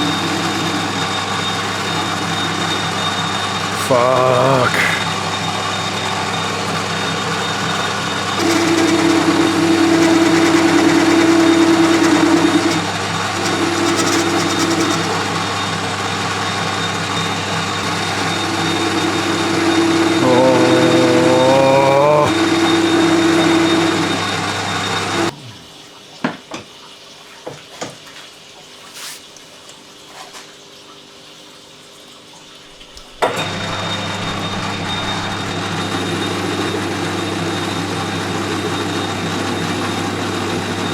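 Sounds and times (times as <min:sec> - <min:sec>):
loud ringing tone: 0:00.0 - 0:05.5, 0:17.8 - 0:25.3
machine tool humming: 0:00.0 - 0:25.4, 0:33.2 - 0:40.9.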